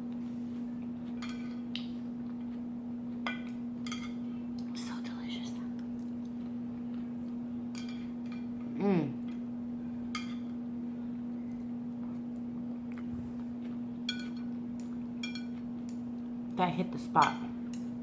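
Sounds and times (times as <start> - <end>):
steady low hum: 0.0 - 18.0
person humming mmm: 8.7 - 9.3.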